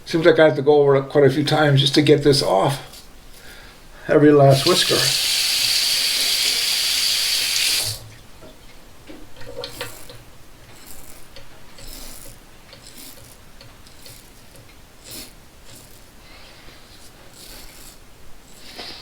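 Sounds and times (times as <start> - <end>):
running water: 4.4 - 8.2
razor scraping stubble: 4.5 - 8.0, 9.6 - 19.0.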